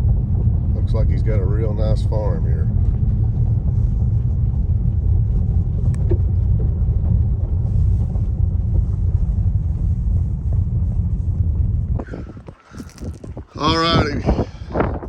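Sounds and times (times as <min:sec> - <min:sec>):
vehicle driving rumble: 0:00.0 - 0:15.0.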